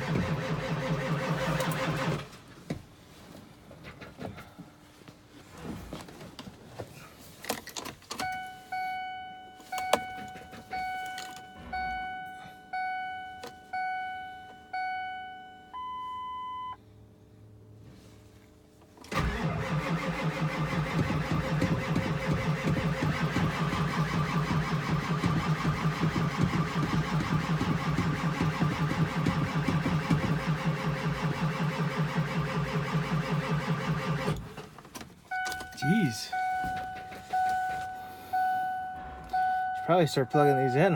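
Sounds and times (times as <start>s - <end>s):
diesel engine starting and idling: 0.0s - 2.5s, 8.2s - 16.8s, 18.9s - 40.9s
steady beep: 8.3s - 16.8s, 35.3s - 40.9s.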